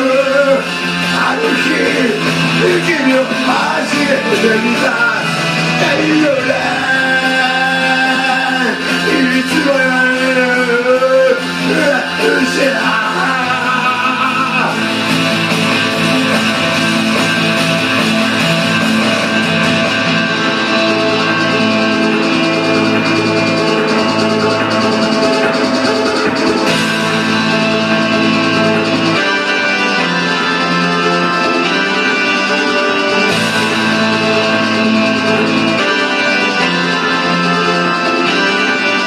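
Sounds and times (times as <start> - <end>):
person singing: 0.0 - 15.5
pop-rock band with guitar: 0.0 - 39.0.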